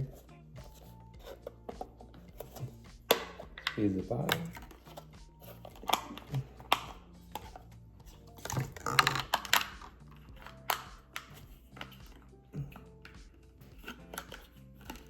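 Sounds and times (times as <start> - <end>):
plastic container clicking and crinkling: 8.4 - 12.2.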